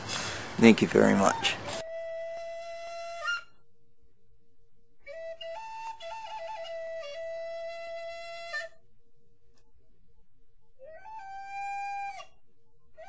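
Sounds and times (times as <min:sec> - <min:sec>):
faint steady hum: 0:00.0 - 0:05.2
solo flute melody: 0:01.2 - 0:03.7, 0:05.0 - 0:08.9, 0:10.6 - 0:13.0.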